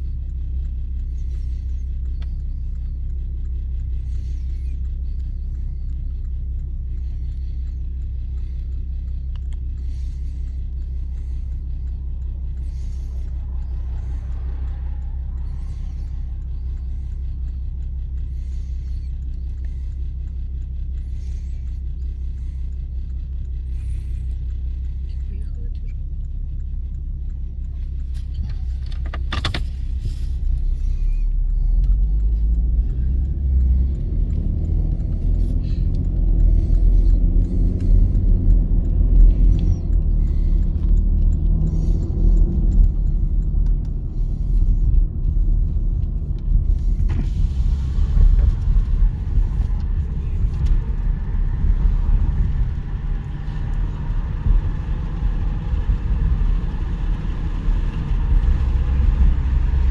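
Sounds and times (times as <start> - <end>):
diesel locomotive engine rumbling: 0.0 - 59.9
sharp click: 28.2 - 30.6.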